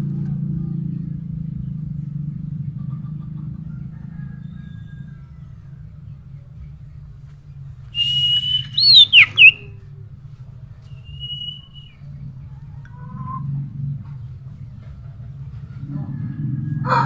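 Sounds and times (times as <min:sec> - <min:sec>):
bird whistling and calling: 0:08.0 - 0:09.6, 0:11.2 - 0:11.6.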